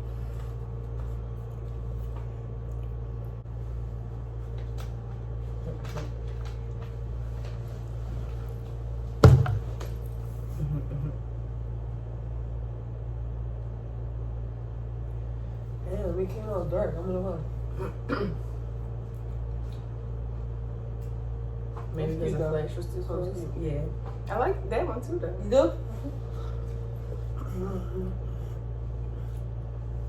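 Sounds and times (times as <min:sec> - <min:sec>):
steady low hum: 0:00.0 - 0:30.0
sharp knock: 0:09.2 - 0:09.7.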